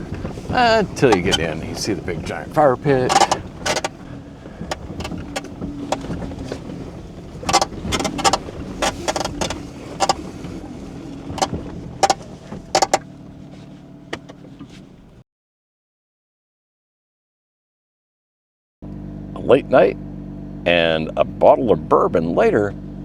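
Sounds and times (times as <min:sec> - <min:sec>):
sharp clicks and knocks: 0:00.0 - 0:15.0
vehicle engine running slowly: 0:00.0 - 0:15.2, 0:18.8 - 0:23.0.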